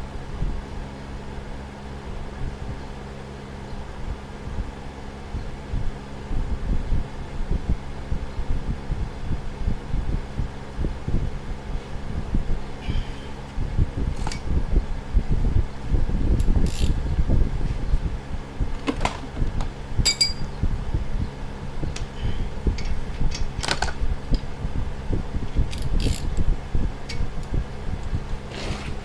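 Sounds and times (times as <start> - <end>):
electric fan running: 0.0 - 29.0
metallic clinks of tools: 20.0 - 20.5.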